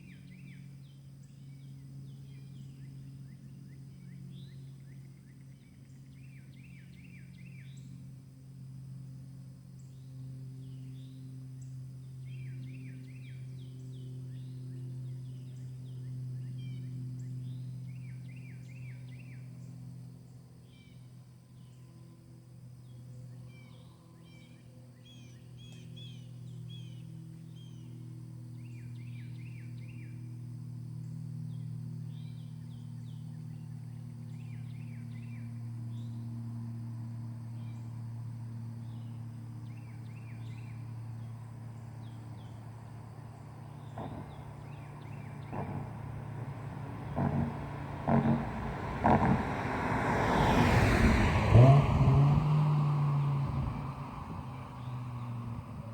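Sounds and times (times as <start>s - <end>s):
car engine idling: 33.0s - 55.9s
birds chirping: 38.7s - 55.9s.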